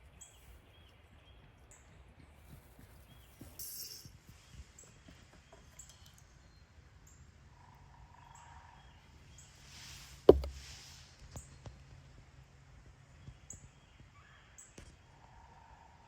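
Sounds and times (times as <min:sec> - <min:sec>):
sharp knock: 0:10.3 - 0:10.7.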